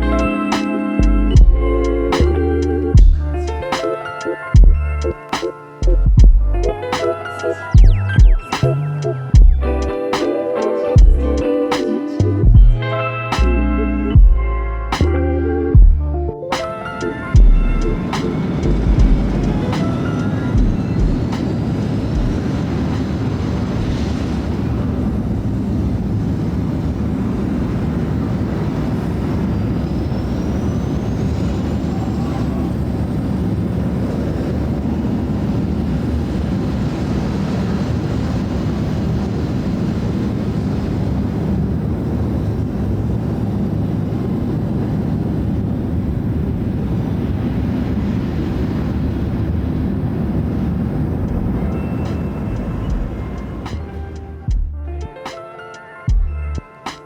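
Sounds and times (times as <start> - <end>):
vehicle rumble: 1.0 - 3.7, 5.8 - 6.9, 7.8 - 10.0, 17.4 - 29.7, 36.3 - 55.1.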